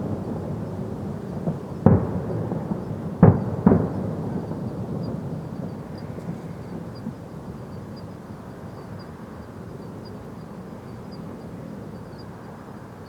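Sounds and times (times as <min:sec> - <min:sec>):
distant fireworks booms: 0:00.0 - 0:08.2.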